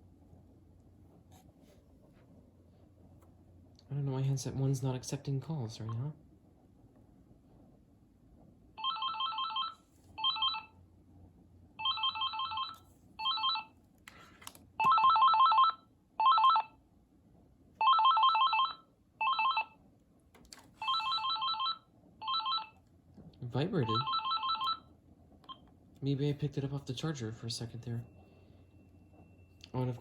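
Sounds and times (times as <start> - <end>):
cordless phone ringing: 8.8 - 10.8, 11.8 - 13.7, 14.8 - 16.8, 17.8 - 19.8, 20.8 - 22.8, 23.8 - 24.9.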